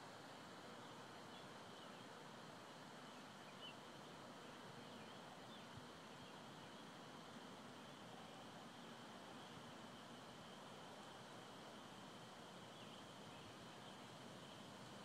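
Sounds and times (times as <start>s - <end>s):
faint outdoor hiss: 0.0s - 15.0s.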